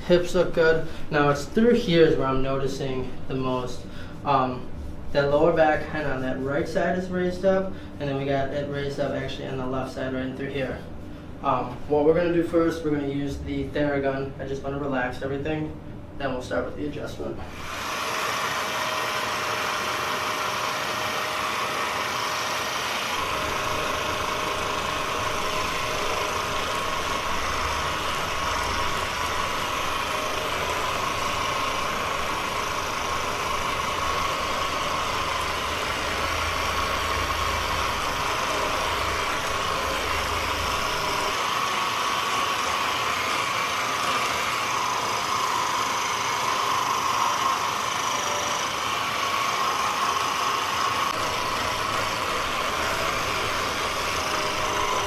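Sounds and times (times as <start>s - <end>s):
massage gun whine: 16.3s - 55.0s.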